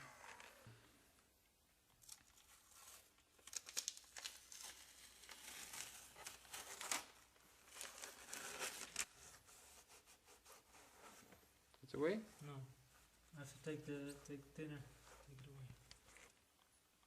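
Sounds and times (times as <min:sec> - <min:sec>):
sheet material crinkling: 0:02.0 - 0:11.4.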